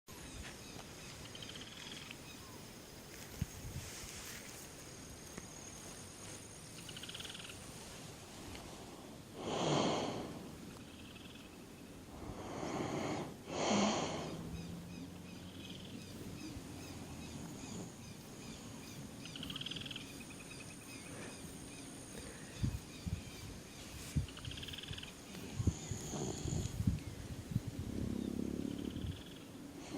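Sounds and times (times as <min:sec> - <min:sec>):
birds chirping: 0:00.1 - 0:02.9, 0:09.9 - 0:29.9
man snoring: 0:12.2 - 0:14.4.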